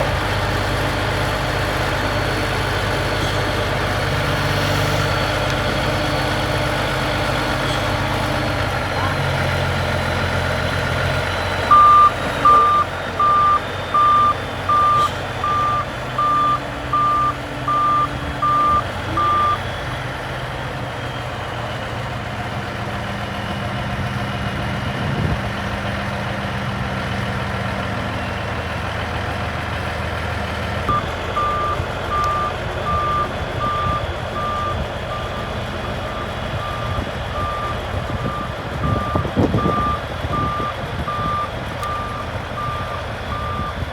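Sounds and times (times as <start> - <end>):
diesel engine under load: 0.0 - 43.9
reversing alarm beeping: 11.4 - 19.9, 30.9 - 43.8.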